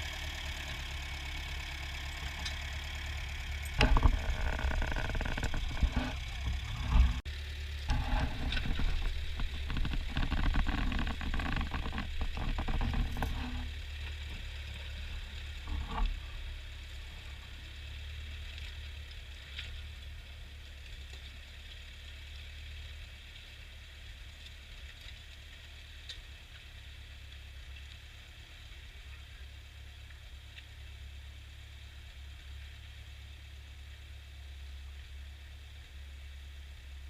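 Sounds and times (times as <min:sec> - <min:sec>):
tractor engine droning: 0:00.0 - 0:20.1.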